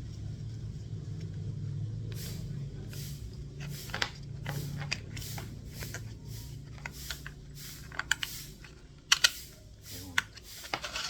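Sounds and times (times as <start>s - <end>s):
sharp plastic clicks: 9.0s - 9.5s.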